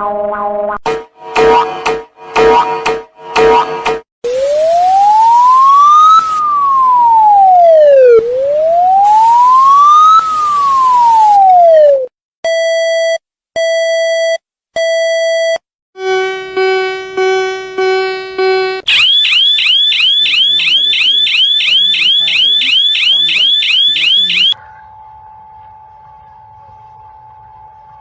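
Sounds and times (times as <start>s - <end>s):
electronic siren tone: 1.2s - 12.1s, 16.0s - 24.7s
harsh pulsing buzz tone: 16.0s - 19.0s
steady electronic beeps: 16.1s - 24.6s.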